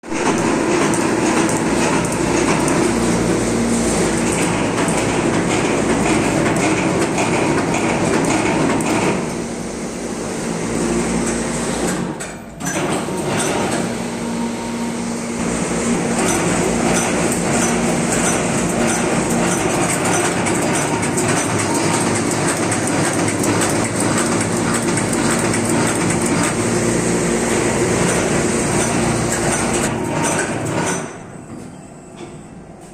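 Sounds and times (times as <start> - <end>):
factory machinery rattling: 0.0 - 32.9
machinery hum: 0.0 - 32.9.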